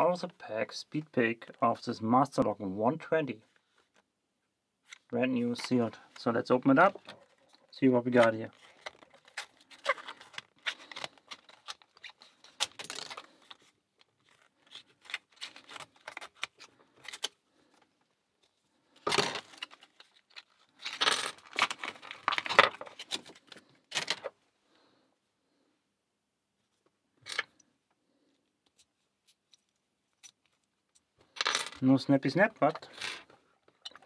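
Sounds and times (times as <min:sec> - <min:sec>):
packaging tearing and crinkling: 0:08.6 - 0:17.4, 0:19.1 - 0:24.3.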